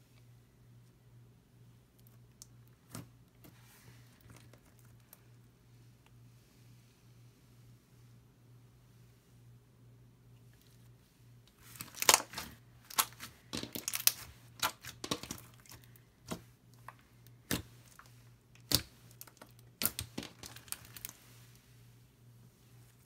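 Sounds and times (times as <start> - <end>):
crunchy slime crackles and pops: 11.7 - 16.4.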